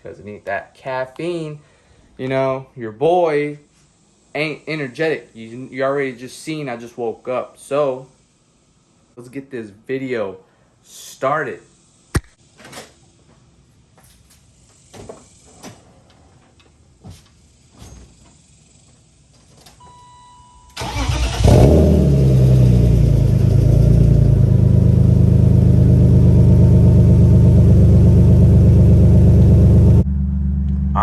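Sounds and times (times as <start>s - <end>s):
car engine starting and idling: 20.7s - 31.0s.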